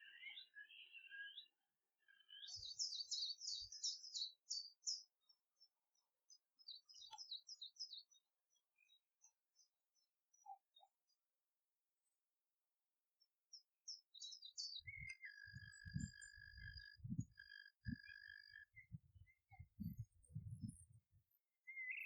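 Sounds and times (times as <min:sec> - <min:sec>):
songbird singing: 0:00.0 - 0:11.3, 0:13.2 - 0:22.0
soft low thumps: 0:18.9 - 0:21.0.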